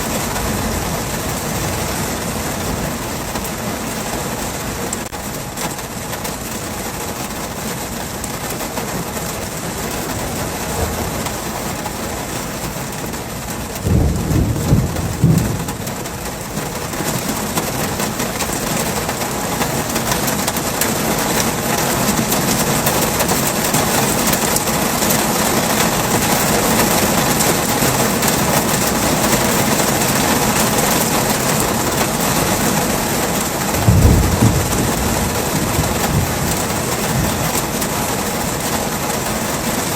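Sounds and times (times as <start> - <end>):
low rumble of thunder: 0.0 - 3.4, 10.4 - 12.3, 13.7 - 18.0, 33.6 - 38.0
heavy rain falling: 0.0 - 39.9.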